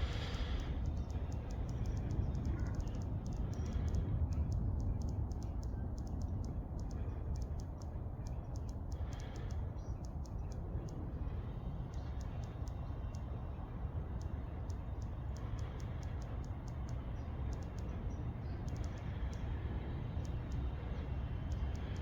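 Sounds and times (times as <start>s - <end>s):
rapid high-pitched clicks: 0.0s - 22.0s
steady low rumble: 0.0s - 22.0s.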